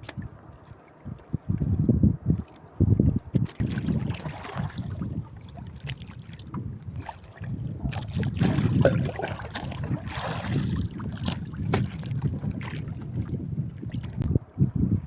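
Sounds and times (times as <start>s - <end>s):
wind buffeting microphone: 0.0s - 15.0s
water splashing: 3.3s - 14.3s
sharp knocks against hull: 7.9s - 12.9s.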